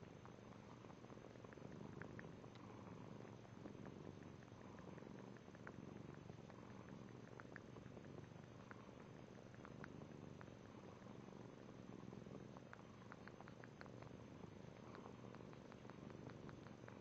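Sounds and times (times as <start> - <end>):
low purr-like rumble: 0.0 - 17.0
pet mouth clicks and smacks: 4.1 - 10.8, 12.6 - 17.0.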